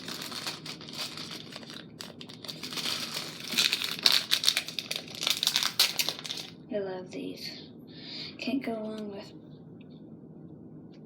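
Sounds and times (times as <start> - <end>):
packaging crinkling: 0.0 - 6.6.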